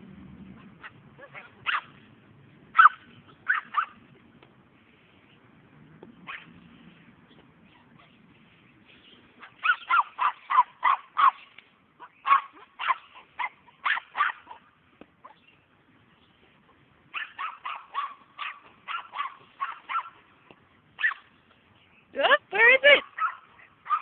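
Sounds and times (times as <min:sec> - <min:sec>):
puppy yapping: 0:00.8 - 0:02.0, 0:02.7 - 0:04.0, 0:06.3 - 0:06.6, 0:09.4 - 0:15.4, 0:17.1 - 0:20.2, 0:21.0 - 0:21.3, 0:23.0 - 0:24.0.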